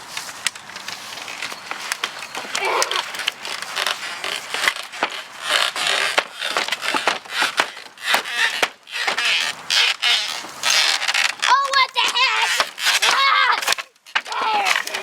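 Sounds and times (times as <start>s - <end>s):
scraping: 0.0s - 15.0s
wood cracking and snapping: 0.2s - 15.0s.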